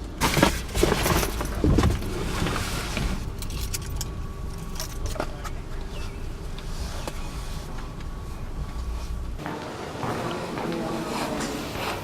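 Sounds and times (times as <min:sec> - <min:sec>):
car low rumble: 0:00.0 - 0:12.0
car keys jingling: 0:03.3 - 0:05.5.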